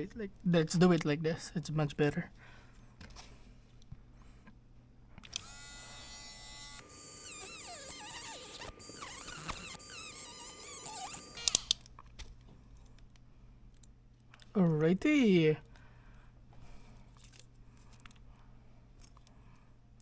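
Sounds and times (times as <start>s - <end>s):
small electric tool motor whining: 5.2s - 11.8s
sharp clicks: 6.8s - 11.9s.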